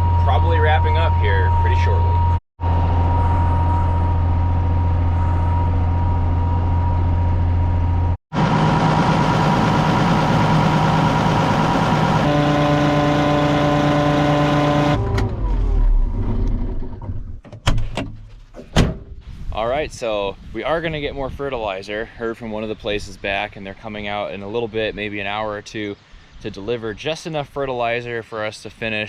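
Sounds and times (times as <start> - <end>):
farm machinery engine running: 0.0 - 16.3.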